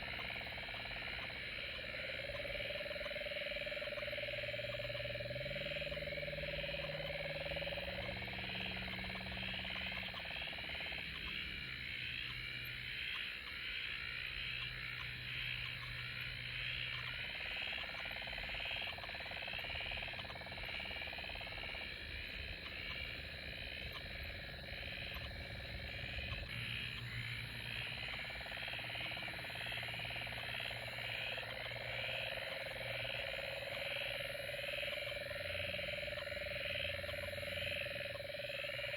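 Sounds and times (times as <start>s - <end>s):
frogs and insects trilling: 0.0s - 38.9s.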